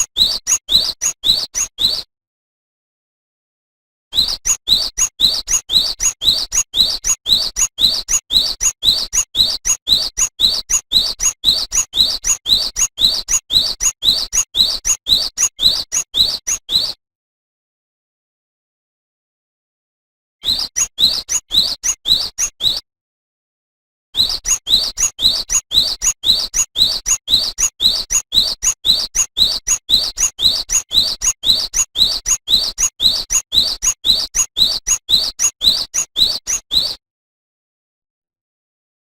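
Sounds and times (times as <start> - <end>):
bird singing high whistled notes: 0.0 - 2.1, 4.1 - 17.0, 20.4 - 22.8, 24.2 - 37.0.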